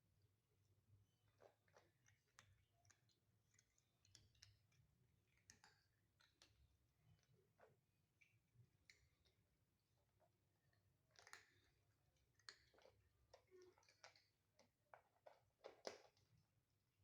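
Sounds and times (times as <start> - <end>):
cats chewing: 1.2 - 16.6.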